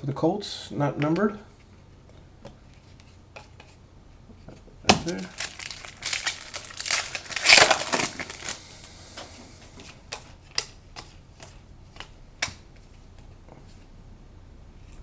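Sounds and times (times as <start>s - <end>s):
wrapper crinkling: 5.0s - 8.9s.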